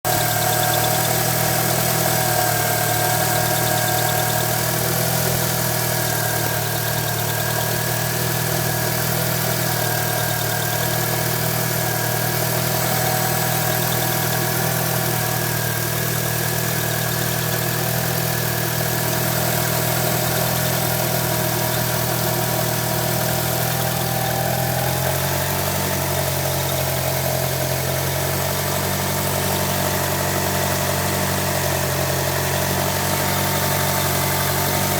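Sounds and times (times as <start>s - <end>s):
engine chirping noise: 0.0s - 31.4s
car engine idling: 0.0s - 34.9s.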